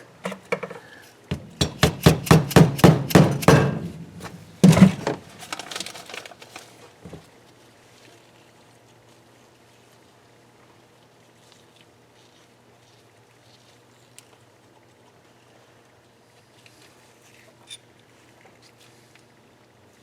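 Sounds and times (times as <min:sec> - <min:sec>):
hammer tapping on metal tool: 0:01.3 - 0:03.9.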